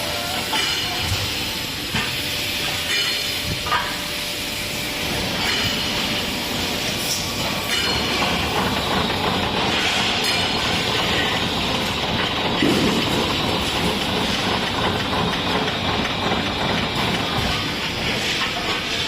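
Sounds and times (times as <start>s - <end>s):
machine hiss: 0.0s - 19.0s
machinery din: 7.7s - 17.7s.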